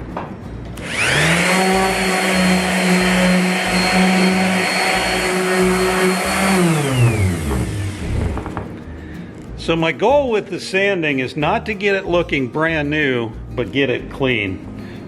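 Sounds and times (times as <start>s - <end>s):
electric orbital sander running: 0.8s - 8.6s.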